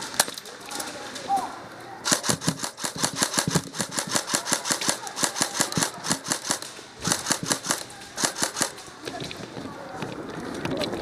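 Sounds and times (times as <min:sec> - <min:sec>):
airsoft gun rapid firing: 0:02.0 - 0:08.8.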